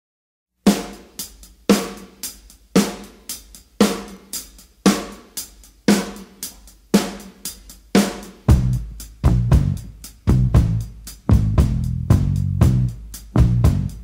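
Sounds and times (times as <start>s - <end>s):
drum kit beat: 0.6s - 14.0s
bass notes: 8.5s - 14.0s.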